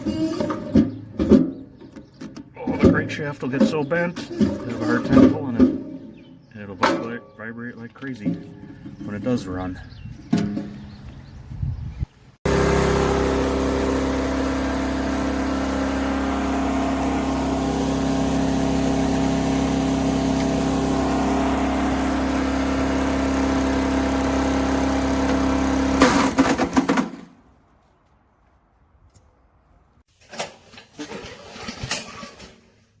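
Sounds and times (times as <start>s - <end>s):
engine cutting off with loud burst: 12.4s - 27.0s
wood chipper engine running: 12.4s - 27.2s
knocks and rattles: 24.8s - 27.4s.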